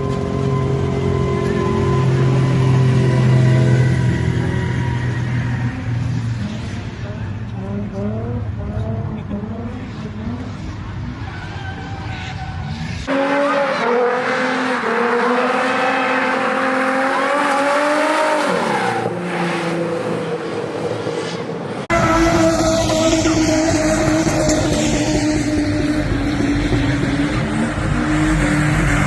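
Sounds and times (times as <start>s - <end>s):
car engine at high revs: 0.0s - 29.0s
tyre squeal: 3.3s - 5.9s, 15.7s - 20.3s.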